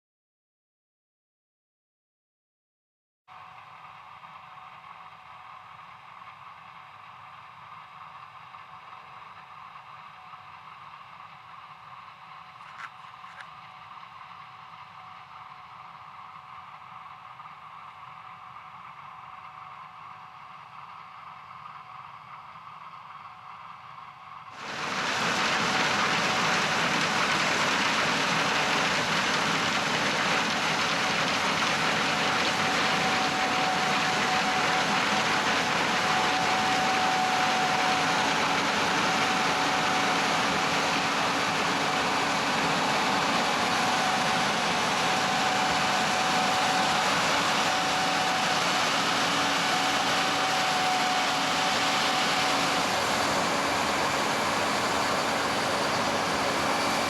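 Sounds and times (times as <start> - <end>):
combine harvester hum and whine: 3.3 - 57.0
loud rushing noise: 24.6 - 57.0.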